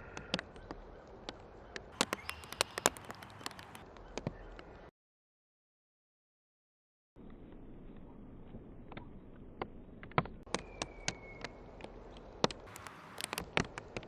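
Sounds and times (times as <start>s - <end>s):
birds tapping and clicking: 0.0s - 4.9s, 8.9s - 14.0s
faint outdoor background: 0.0s - 4.9s, 7.2s - 14.0s.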